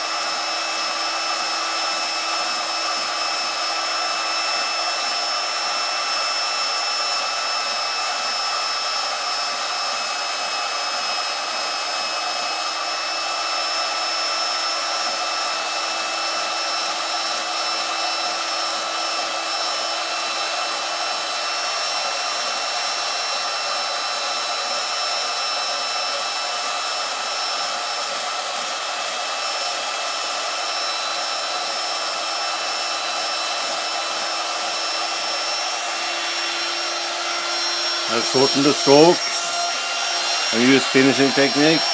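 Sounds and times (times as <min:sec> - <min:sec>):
small electric motor whirring: 0:00.0 - 0:41.9.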